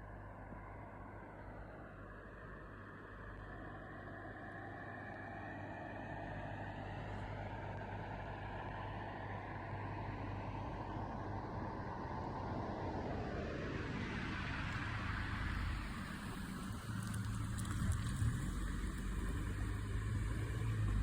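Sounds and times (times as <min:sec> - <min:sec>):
vehicle engine humming: 0:14.7 - 0:21.0.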